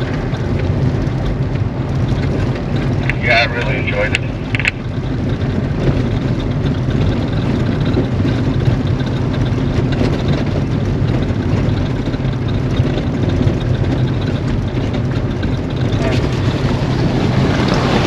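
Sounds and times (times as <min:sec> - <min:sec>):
engine and road noise in cab: 0:00.0 - 0:18.0.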